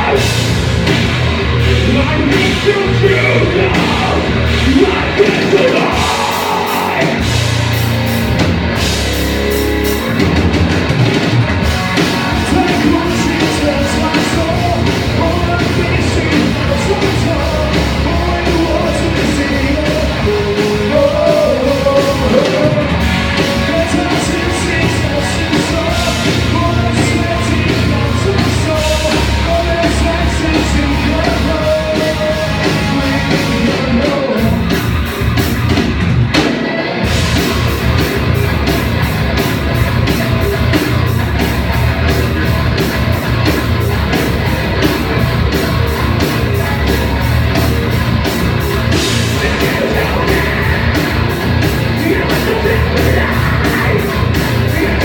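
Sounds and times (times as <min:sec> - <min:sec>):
fast drumbeat: 0:00.0 - 0:55.0
live rock band playing: 0:00.0 - 0:55.0
person singing: 0:01.6 - 0:07.4, 0:12.0 - 0:34.8, 0:48.8 - 0:55.0.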